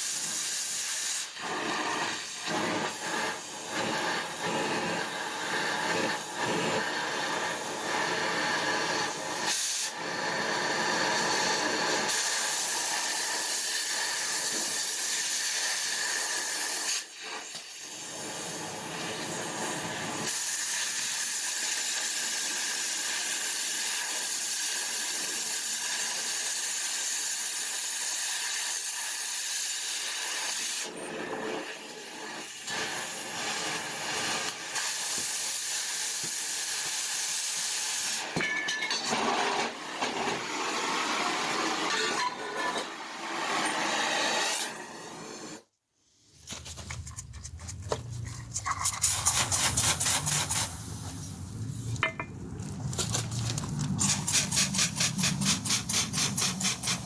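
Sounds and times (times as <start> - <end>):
loud hiss of gas jet: 0.0 - 38.4, 48.6 - 52.1, 54.0 - 57.0.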